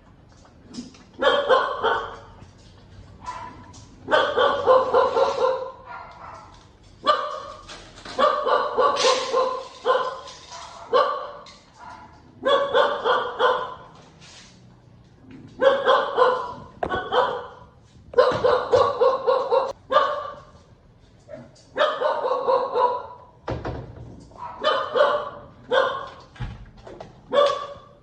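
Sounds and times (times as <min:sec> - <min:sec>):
puppy barking: 0:01.2 - 0:02.4, 0:03.2 - 0:14.0, 0:15.6 - 0:20.5, 0:21.3 - 0:23.3, 0:24.4 - 0:26.2, 0:27.3 - 0:28.0.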